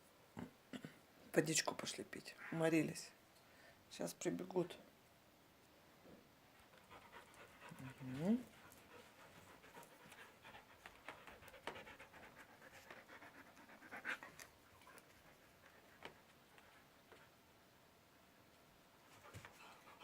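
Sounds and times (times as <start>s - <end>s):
dog panting: 6.6s - 17.4s, 19.0s - 20.0s.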